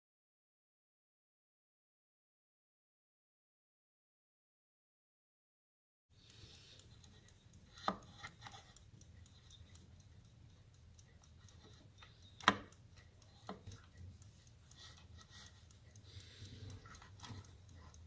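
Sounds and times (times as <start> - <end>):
clock ticking: 6.2 - 18.0.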